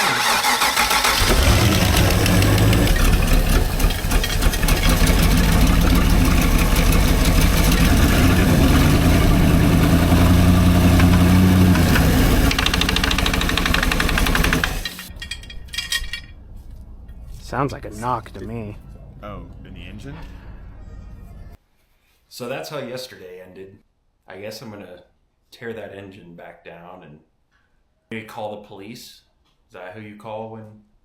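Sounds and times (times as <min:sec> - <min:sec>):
engine running with loud clacking: 0:01.2 - 0:15.1.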